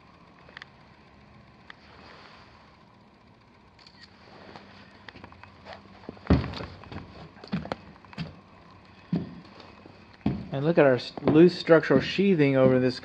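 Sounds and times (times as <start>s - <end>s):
footsteps on wooden framing: 5.2s - 13.0s
knocks and thumps: 6.2s - 8.4s, 10.2s - 10.5s.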